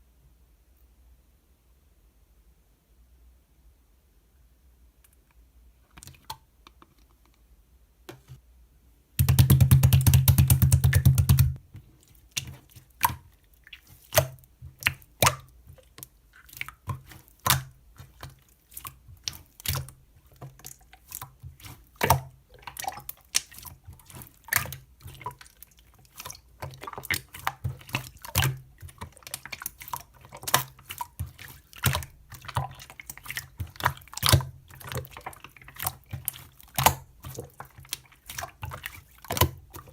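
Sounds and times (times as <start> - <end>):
slime squelching wet clicks: 9.2 - 39.9.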